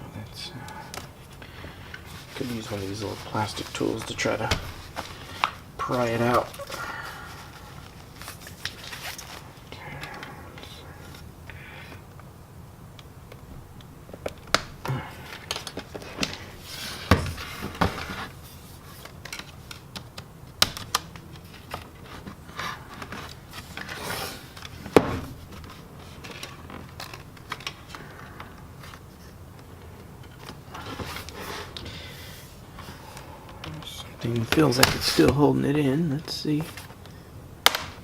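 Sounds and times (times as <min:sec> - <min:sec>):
plastic clips snapping: 0:37.6 - 0:38.0.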